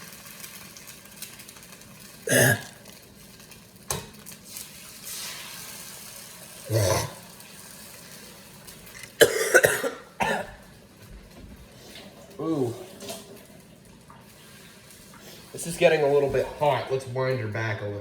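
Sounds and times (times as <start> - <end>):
person coughing: 2.3 - 2.8, 6.7 - 7.2, 9.2 - 10.6.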